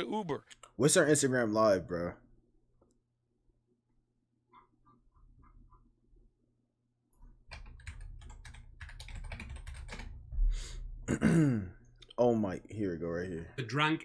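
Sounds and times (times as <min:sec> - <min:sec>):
fast typing on keyboard: 0:07.4 - 0:10.3.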